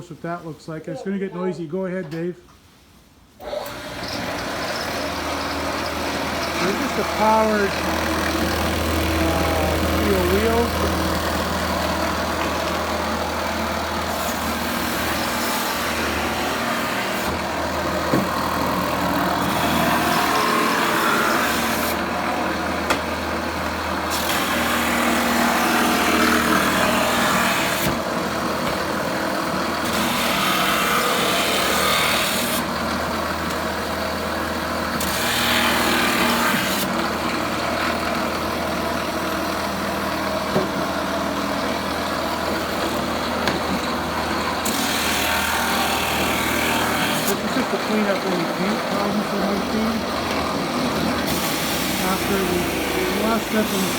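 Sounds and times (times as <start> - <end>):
wire wheel motor hum: 3.4 - 53.9
harsh scraping on wood: 3.7 - 23.1, 42.2 - 53.9.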